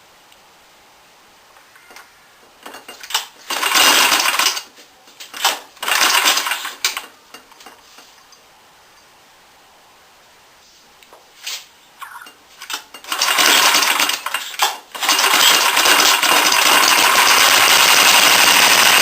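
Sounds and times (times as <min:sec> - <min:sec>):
small engine pull-start rattling: 0:03.1 - 0:04.6, 0:05.4 - 0:07.0, 0:12.7 - 0:19.0.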